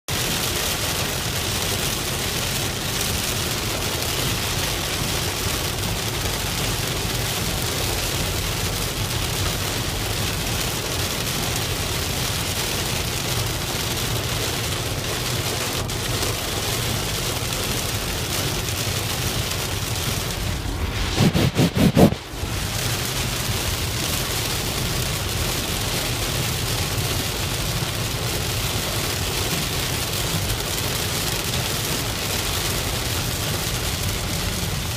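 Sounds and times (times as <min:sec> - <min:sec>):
heavy rain on a car: 0:00.1 - 0:20.9, 0:21.9 - 0:34.9
road noise: 0:00.1 - 0:32.0
loud low pulsing rumble: 0:20.1 - 0:22.9.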